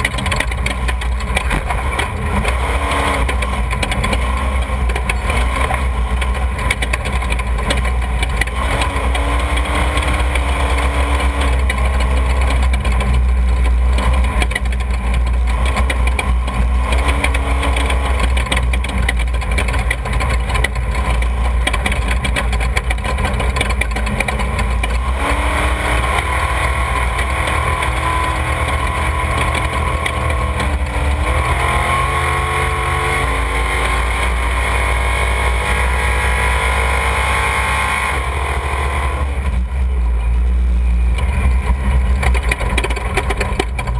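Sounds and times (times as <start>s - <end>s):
heavy low rumble: 0.0s - 34.8s, 38.2s - 43.9s
engines idling and revving: 0.0s - 43.9s.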